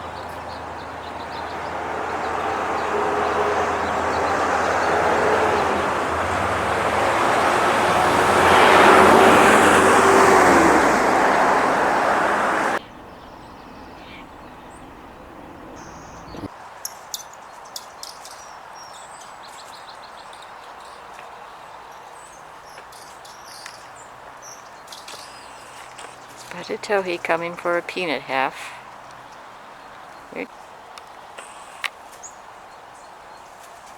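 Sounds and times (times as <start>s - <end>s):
vehicle passing: 0.0s - 16.5s.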